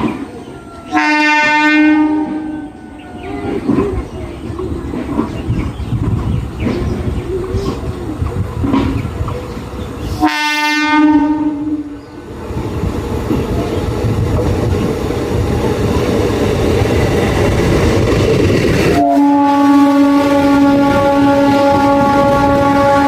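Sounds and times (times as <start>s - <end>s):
train rumble and wheel clatter: 0.0s - 23.0s
train horn blast: 0.8s - 3.8s, 10.1s - 12.0s, 18.9s - 23.0s.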